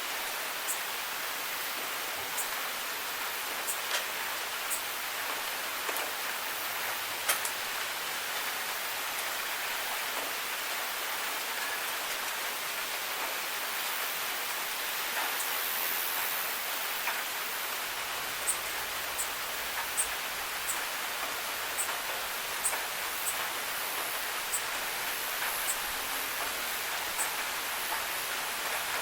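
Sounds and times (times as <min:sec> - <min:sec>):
steady rain hiss: 0:00.0 - 0:29.0
raindrop ticks: 0:07.2 - 0:07.6, 0:18.4 - 0:29.0.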